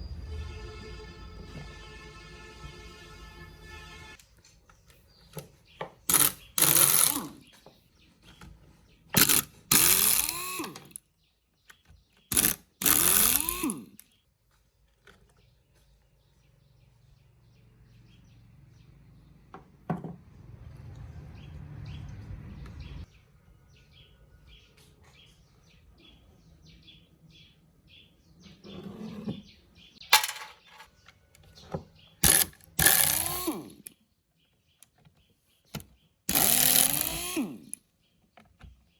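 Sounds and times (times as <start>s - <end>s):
chainsaw starter cord pulls: 6.1s - 7.5s, 9.2s - 11.0s, 12.3s - 14.0s, 32.2s - 33.9s, 36.3s - 37.8s.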